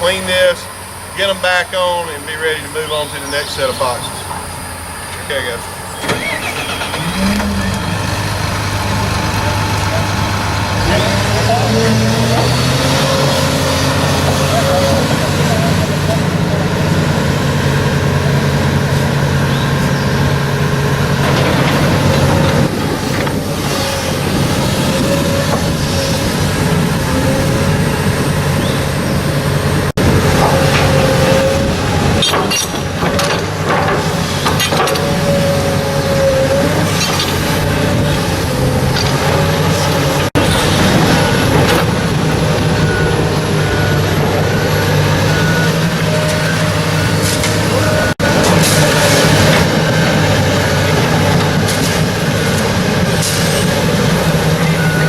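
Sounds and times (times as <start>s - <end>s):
heavy engine running: 0.0s - 55.0s
knocks and clatters: 30.0s - 35.2s.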